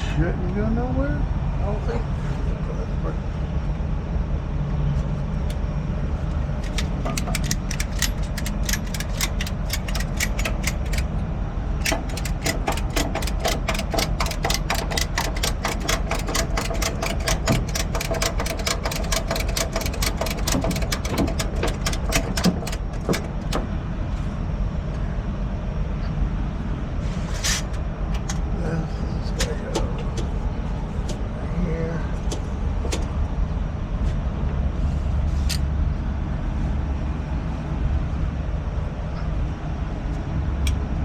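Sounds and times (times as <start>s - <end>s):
truck engine running: 5.2s - 24.6s
rapid mechanical clicking: 6.4s - 23.9s.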